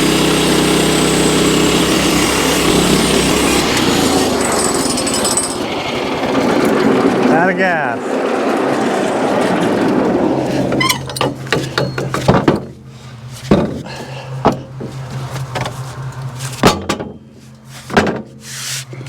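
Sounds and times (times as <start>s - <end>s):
sawmill engine running: 0.0s - 16.6s
sharp knocks and clunks: 10.7s - 15.8s, 16.5s - 18.4s.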